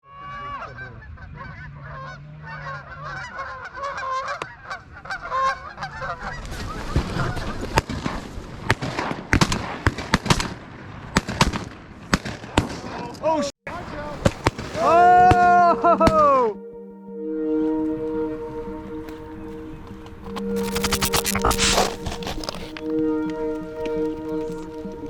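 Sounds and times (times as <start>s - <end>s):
geese honking: 0.2s - 7.7s.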